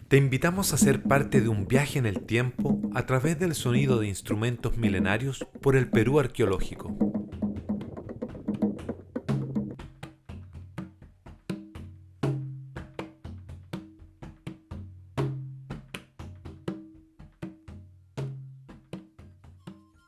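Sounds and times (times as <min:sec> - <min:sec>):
heavy low drum stroke: 0:00.0 - 0:09.8
drum and wood-block strikes: 0:00.0 - 0:20.0.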